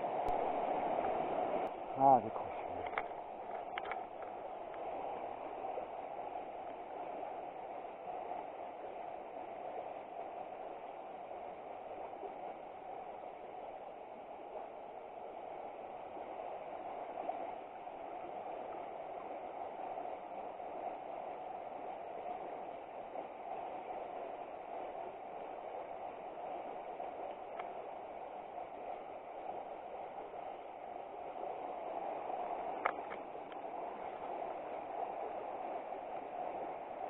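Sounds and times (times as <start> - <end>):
river water flowing: 0.0 - 37.0
faint click: 2.8 - 4.8, 32.8 - 33.6.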